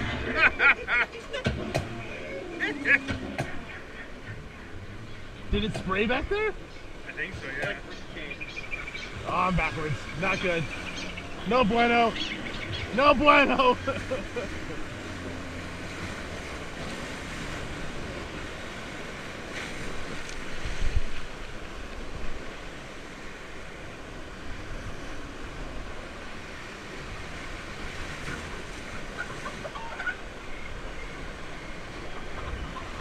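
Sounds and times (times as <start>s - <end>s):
rushing churning river water: 0.0s - 33.0s
wind on microphone: 16.0s - 22.8s.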